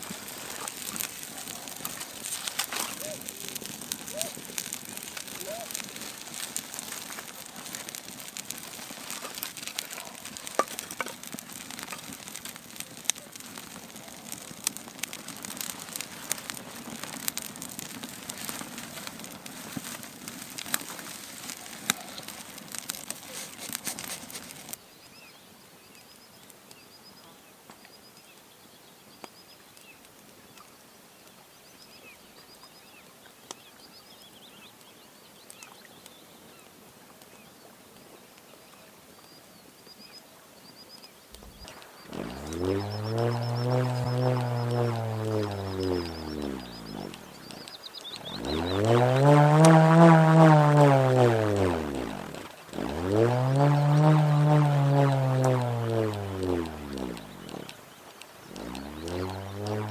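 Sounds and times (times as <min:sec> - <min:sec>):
campfire crackling and popping: 0:00.0 - 0:59.9
small bird chirping: 0:38.5 - 0:49.1, 0:53.4 - 0:59.9.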